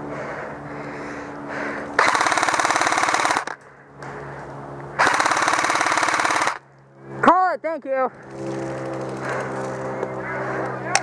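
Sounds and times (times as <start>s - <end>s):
airsoft gun firing full auto: 2.0s - 3.6s, 5.0s - 6.6s.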